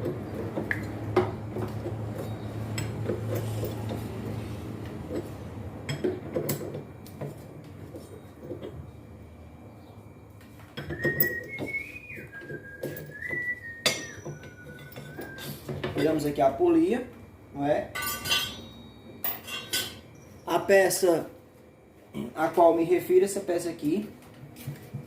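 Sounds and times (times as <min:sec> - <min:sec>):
person whistling a tune: 0:10.8 - 0:15.7
metal tools clinking and knocking: 0:13.8 - 0:16.4, 0:17.9 - 0:20.2.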